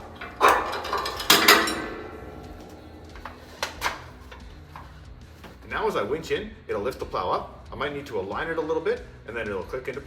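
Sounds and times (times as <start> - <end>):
metal winch hook clanking: 0.0 - 5.0.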